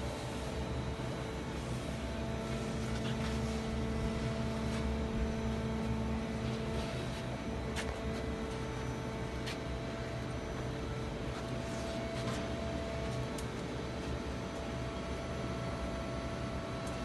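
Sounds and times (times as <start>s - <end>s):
machine humming with steady tones: 0.0s - 17.0s.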